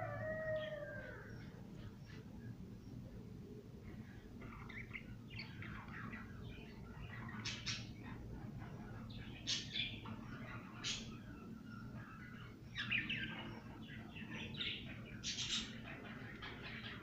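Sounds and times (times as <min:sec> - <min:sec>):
parrots chattering and calling: 0:04.4 - 0:17.0.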